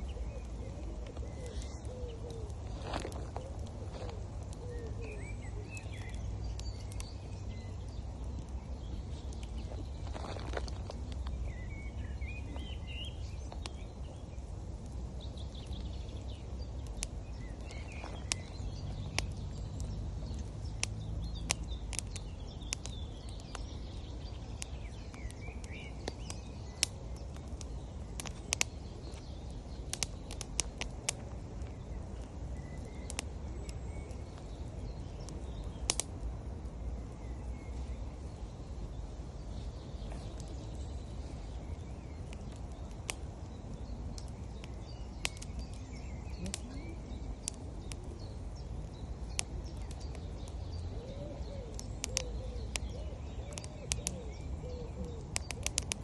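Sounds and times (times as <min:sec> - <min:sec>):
campfire crackling and popping: 0:00.0 - 0:56.0
small birds chirping: 0:00.0 - 0:56.0.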